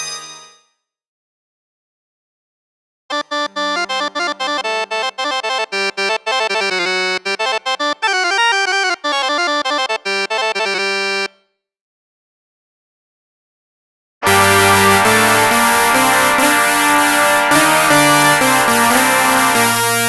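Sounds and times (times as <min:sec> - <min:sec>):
synthesizer playing fast melody: 0:03.1 - 0:10.2, 0:14.2 - 0:20.0.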